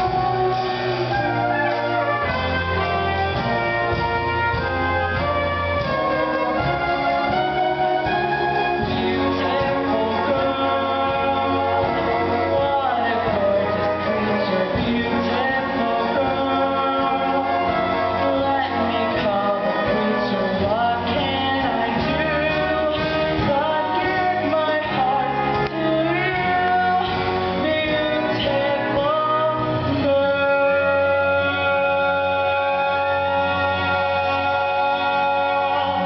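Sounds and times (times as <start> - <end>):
instrumental accompaniment: 0.0 - 36.0
man and woman singing: 7.3 - 36.0.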